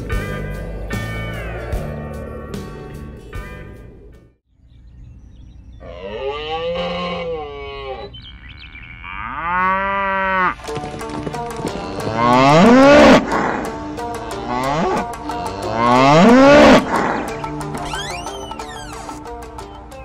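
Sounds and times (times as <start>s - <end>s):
cattle mooing: 5.8s - 8.1s, 8.9s - 10.6s, 11.7s - 13.4s, 14.4s - 17.0s.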